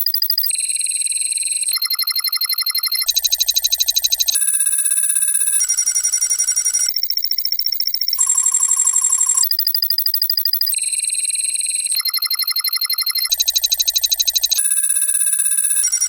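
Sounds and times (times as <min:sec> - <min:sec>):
pulsing electronic beeps: 0:11.6 - 0:16.0.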